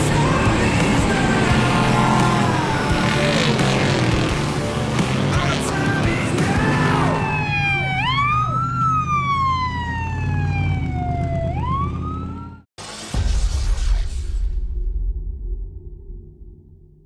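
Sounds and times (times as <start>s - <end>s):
siren wailing: 6.5s - 12.7s.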